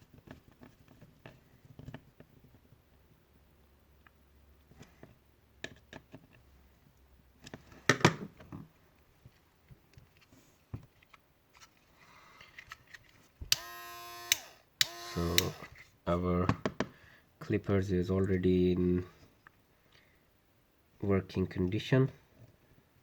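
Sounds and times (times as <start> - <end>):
hands handling plastic parts: 7.4 - 13.6
sharp click: 13.5 - 15.6.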